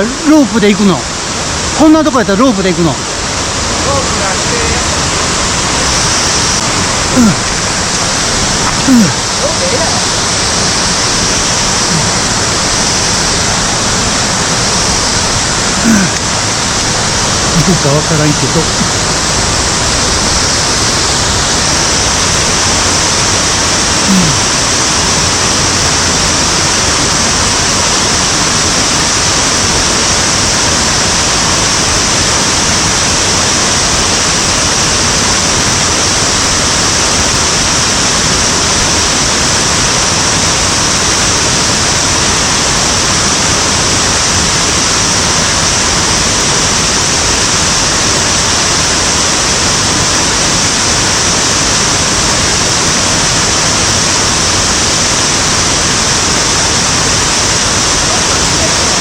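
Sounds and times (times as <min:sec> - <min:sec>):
stream pouring down a cascade: 0:00.0 - 0:59.0.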